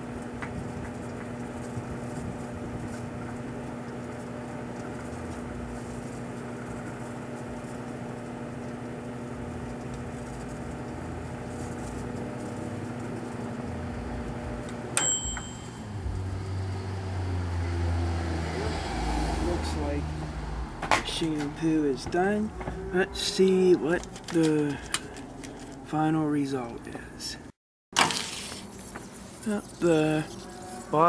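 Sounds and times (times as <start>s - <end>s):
microwave oven humming: 0.0s - 17.9s
brief high ring: 15.0s - 16.0s.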